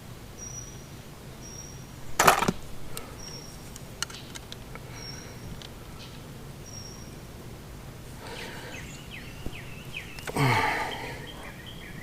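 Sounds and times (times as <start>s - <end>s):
birds chirping: 0.0s - 12.0s
sharp clicks: 3.7s - 4.6s.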